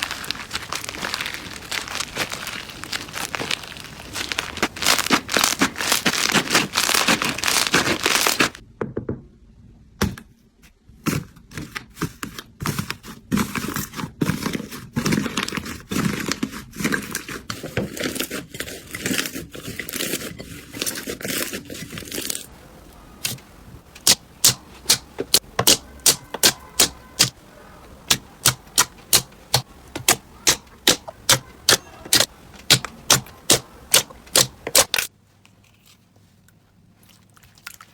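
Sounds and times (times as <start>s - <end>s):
slime crackling and popping: 0.0s - 8.6s.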